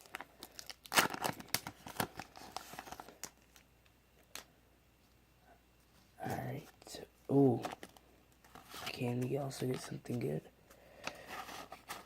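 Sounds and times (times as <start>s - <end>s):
foil wrapper crinkling: 0.0s - 3.7s.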